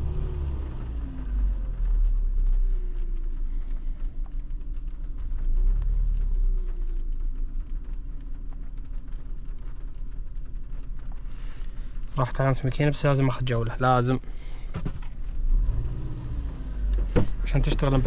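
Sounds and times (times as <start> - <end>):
misfiring car engine revving: 0.0 - 7.2, 15.2 - 18.0.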